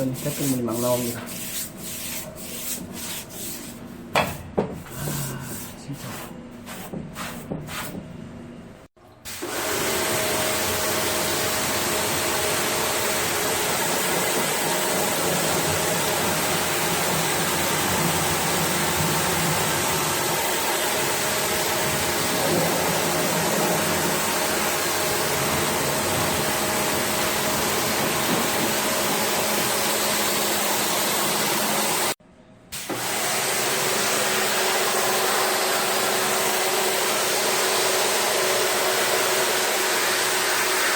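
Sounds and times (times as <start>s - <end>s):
cleaning machine hissing: 9.3s - 32.2s, 32.8s - 40.9s.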